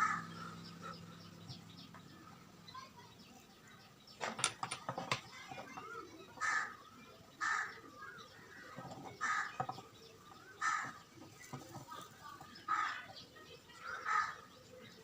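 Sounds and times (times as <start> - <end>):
bird calling: 0.0 - 4.3, 5.3 - 15.0.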